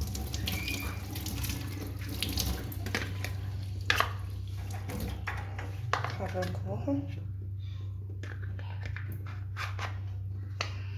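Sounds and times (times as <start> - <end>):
tap water running into sink: 0.0 - 5.6.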